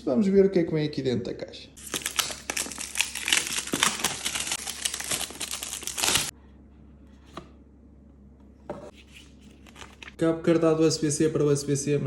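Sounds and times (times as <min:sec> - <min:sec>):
packaging crinkling and rustling: 0:01.8 - 0:06.3, 0:09.5 - 0:10.2.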